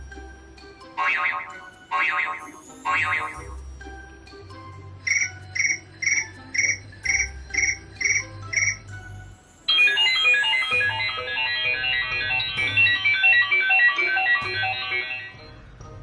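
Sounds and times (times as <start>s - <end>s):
synthesized ringtone melody: 0.9s - 15.7s
cricket chirp sound effect: 5.1s - 8.8s.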